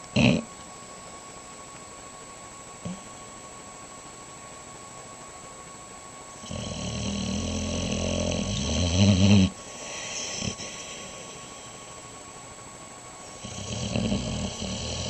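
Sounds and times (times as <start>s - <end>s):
dog snoring: 0.1s - 0.5s, 6.4s - 12.0s, 13.2s - 15.0s.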